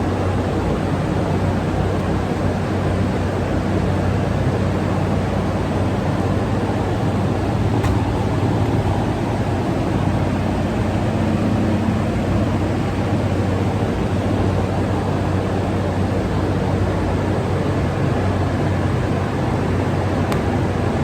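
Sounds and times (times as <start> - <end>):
electric fan running: 0.0 - 21.0.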